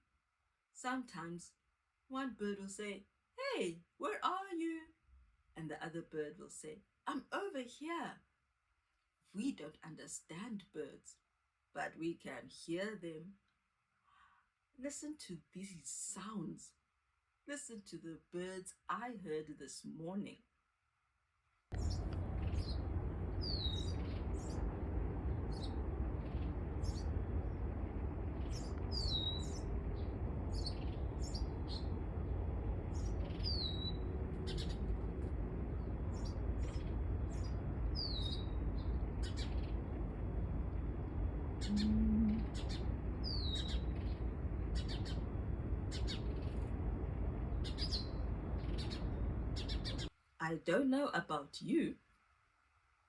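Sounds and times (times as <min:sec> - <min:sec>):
birds chirping: 0:21.7 - 0:50.1
low rumble: 0:21.7 - 0:50.1
bird whistling downward: 0:23.4 - 0:24.6, 0:28.4 - 0:32.0, 0:32.9 - 0:34.9, 0:36.1 - 0:39.8, 0:41.6 - 0:45.3, 0:45.9 - 0:46.7, 0:47.5 - 0:50.1.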